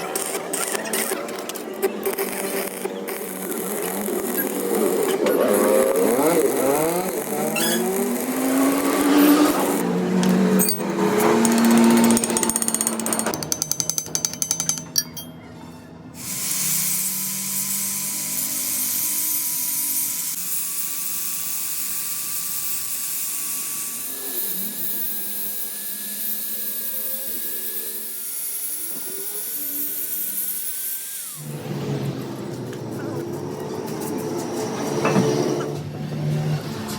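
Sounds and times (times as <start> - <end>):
power tool rattling hammering: 1.6 - 15.3
power tool hissing with whine: 2.2 - 9.9, 16.2 - 32.4.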